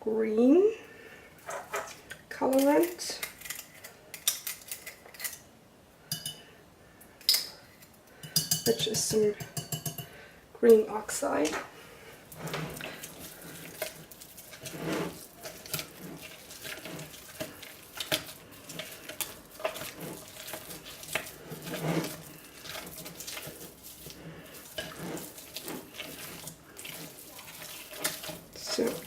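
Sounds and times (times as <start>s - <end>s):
spatula scraping soap in bowl: 12.3s - 29.0s.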